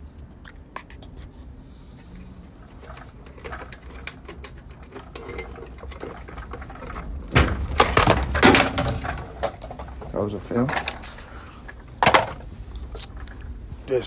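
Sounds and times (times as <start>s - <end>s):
machine parts rattling: 2.6s - 13.5s.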